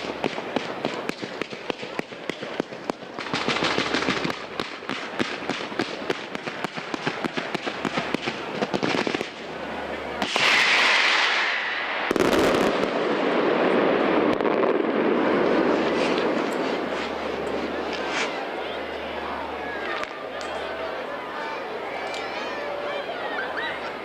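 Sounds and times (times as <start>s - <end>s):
fireworks crackling: 0.0s - 21.0s
firework hissing rush: 10.2s - 14.0s
firework heavy boom: 10.2s - 18.4s.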